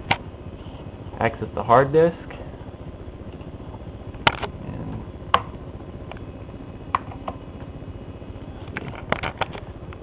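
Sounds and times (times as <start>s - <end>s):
computer humming: 0.0s - 10.0s.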